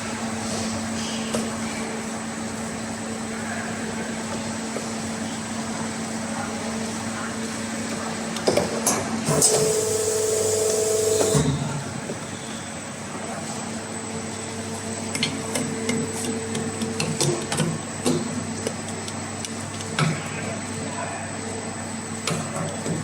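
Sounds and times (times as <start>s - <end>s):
low machine hum: 9.2s - 18.6s
machine motor whine: 9.3s - 12.9s.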